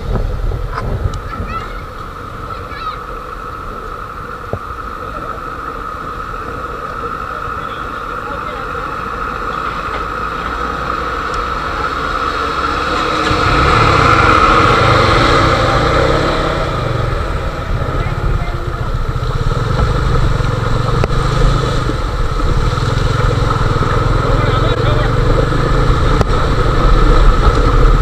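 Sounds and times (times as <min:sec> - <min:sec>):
motorcycle engine running: 0:00.0 - 0:28.0.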